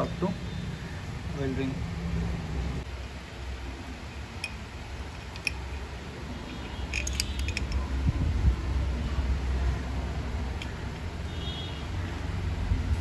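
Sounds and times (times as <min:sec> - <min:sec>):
low steady rumble: 0:01.1 - 0:11.4
metal engine parts clinking: 0:04.1 - 0:08.0.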